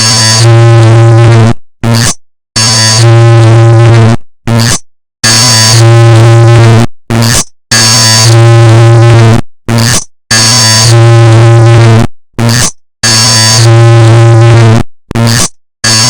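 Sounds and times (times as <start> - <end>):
distorted electronic buzzing: 0.0 - 16.0.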